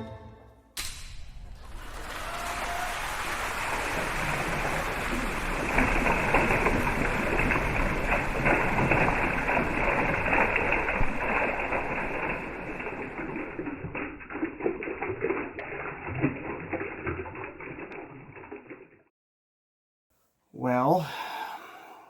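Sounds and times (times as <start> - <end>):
rain pattering: 1.3 - 18.9.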